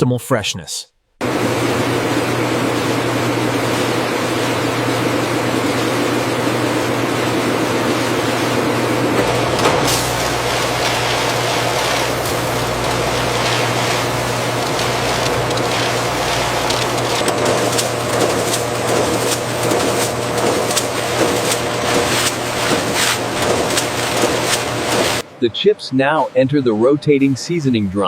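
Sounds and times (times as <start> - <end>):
cooling fans whirring: 1.2 - 25.2
machinery low hum: 9.1 - 25.2.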